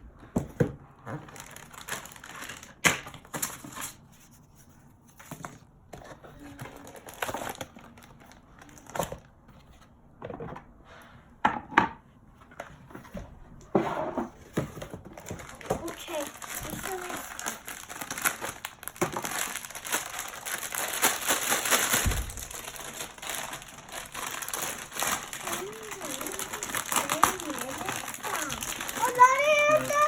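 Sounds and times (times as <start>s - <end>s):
packaging crinkling and rustling: 1.0s - 4.1s, 5.2s - 9.4s, 14.6s - 30.0s.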